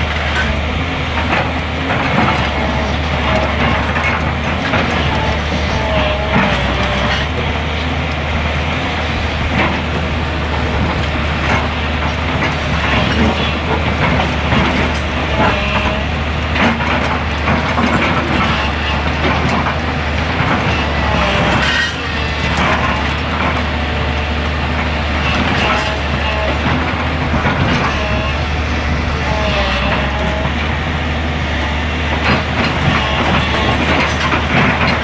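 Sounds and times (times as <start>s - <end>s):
excavator diesel engine running: 0.0s - 35.0s
short squeals: 20.6s - 23.0s.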